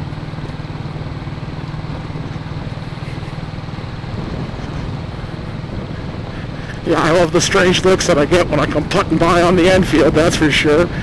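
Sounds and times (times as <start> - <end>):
motorcycle engine thumping: 0.0 - 6.9.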